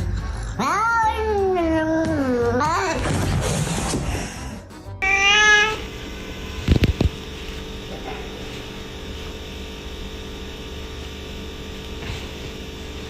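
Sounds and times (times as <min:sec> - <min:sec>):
steady low hum: 0:05.1 - 0:13.0.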